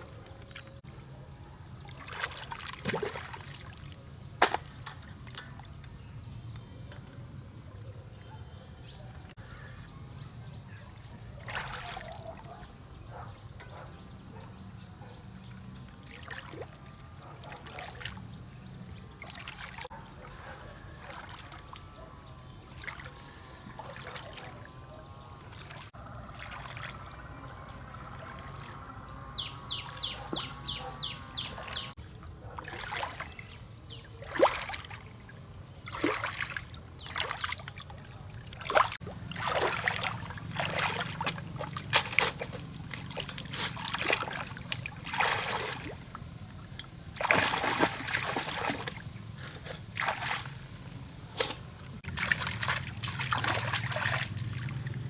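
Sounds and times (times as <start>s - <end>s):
water sloshing splashes: 0.0s - 6.0s, 10.9s - 55.0s
water trickling: 15.4s - 55.0s.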